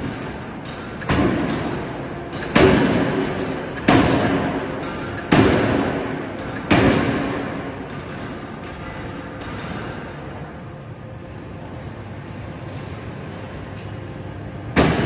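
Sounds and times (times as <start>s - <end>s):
forging machine striking steel: 0.0s - 10.2s.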